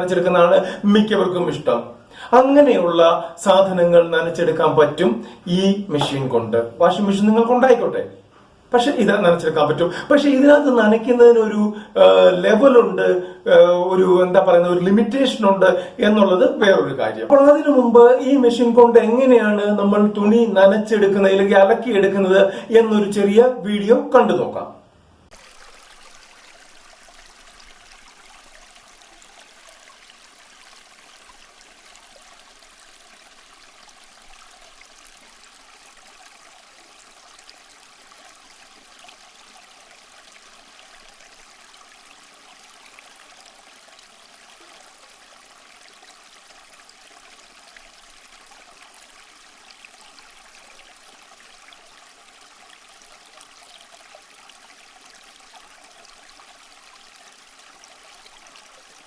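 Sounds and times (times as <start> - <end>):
water churning in bucket: 25.3 - 46.3.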